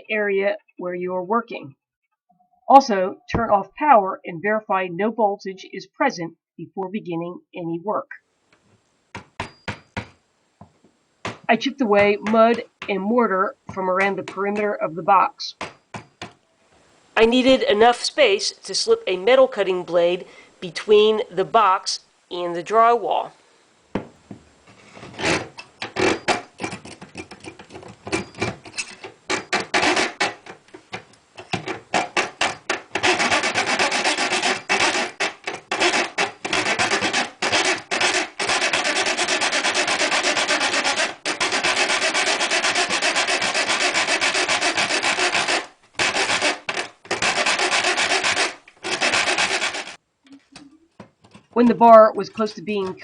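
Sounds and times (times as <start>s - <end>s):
saw rasping through metal: 25.2s - 30.6s, 31.4s - 50.0s.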